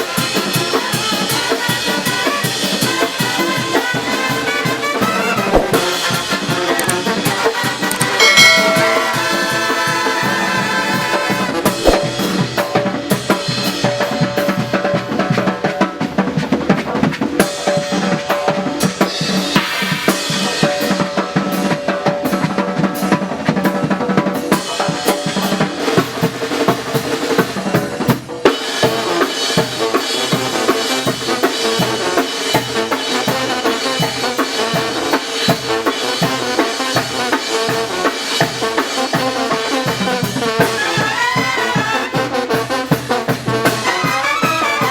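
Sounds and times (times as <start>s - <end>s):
congas and drums playing: 0.0s - 44.9s
sustained horn notes: 7.9s - 11.6s.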